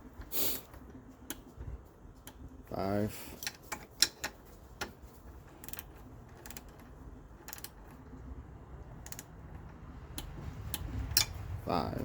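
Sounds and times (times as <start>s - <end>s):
torque wrench clicking: 5.6s - 8.0s, 9.0s - 11.4s.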